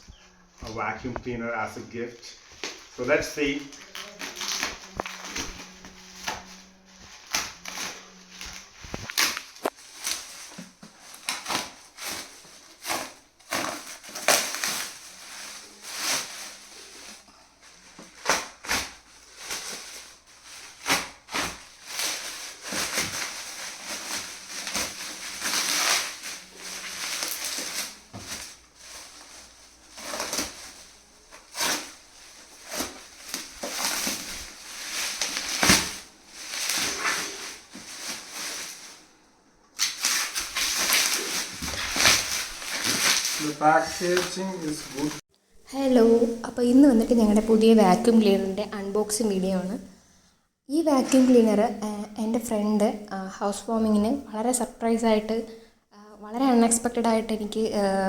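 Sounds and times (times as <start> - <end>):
packaging crackling and tearing: 2.7 - 6.5, 7.1 - 39.1, 39.8 - 45.2.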